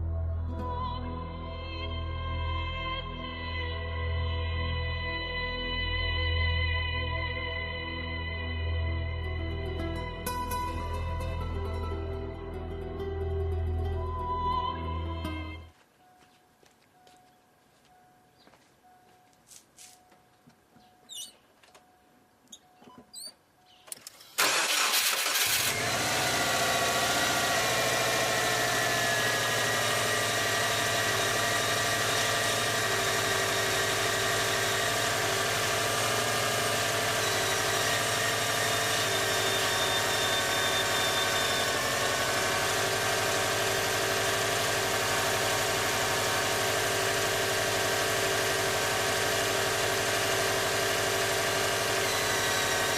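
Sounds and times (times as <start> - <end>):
car engine idling: 23.7 - 52.9
starter motor cranking: 23.9 - 52.9.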